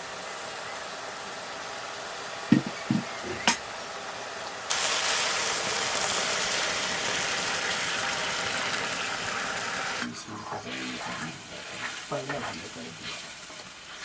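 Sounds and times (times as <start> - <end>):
food sizzling in hot oil: 0.0 - 14.0
short knocks: 2.5 - 3.6.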